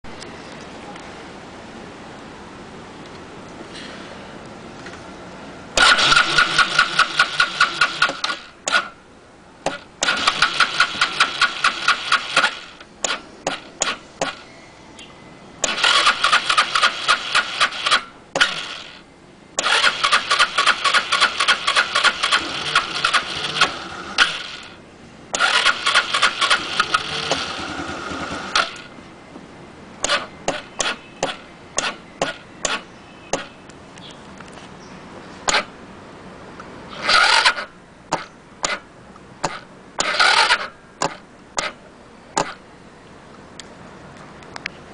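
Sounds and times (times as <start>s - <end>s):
scooter engine cranking: 5.8s - 9.0s, 9.7s - 14.4s, 15.6s - 19.0s, 19.6s - 24.8s, 25.4s - 28.9s, 30.0s - 32.8s, 35.5s - 35.7s, 36.9s - 41.8s.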